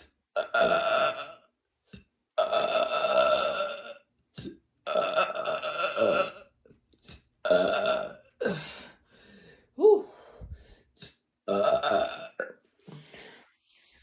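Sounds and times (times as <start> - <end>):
woman belching: 0.4 - 1.4, 2.4 - 4.0, 4.9 - 6.5, 7.4 - 8.6, 11.5 - 12.6.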